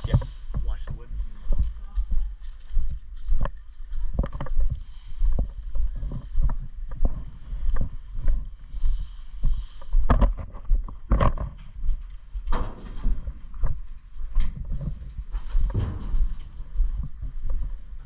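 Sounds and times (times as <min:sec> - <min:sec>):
footsteps: 0:00.0 - 0:18.0.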